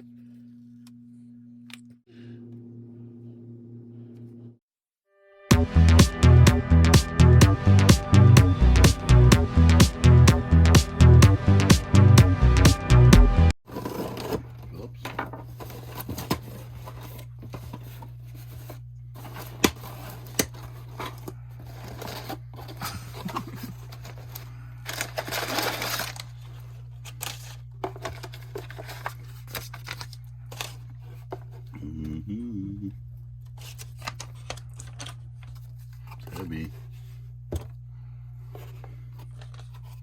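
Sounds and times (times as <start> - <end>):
steady low hum: 18.0 - 40.0
packaging tearing: 19.2 - 30.8
packaging clicks and crinkles: 19.2 - 30.9, 33.5 - 36.0.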